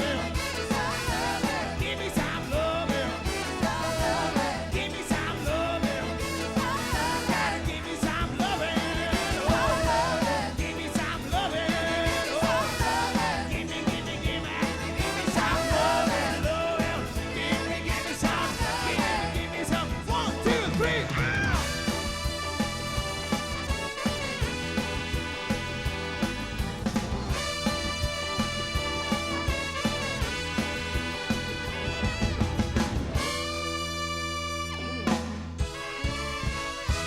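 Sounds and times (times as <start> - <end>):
person singing: 0.0 - 21.8
steady drum beat: 0.0 - 34.5, 35.2 - 37.0
soul band playing: 0.0 - 37.0.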